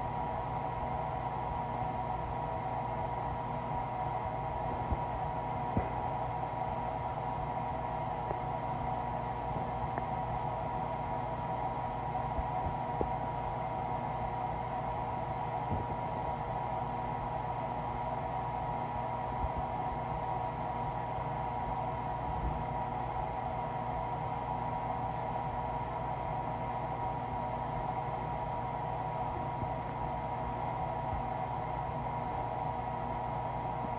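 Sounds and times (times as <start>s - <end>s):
constant hum-like tone: 0.0s - 33.9s.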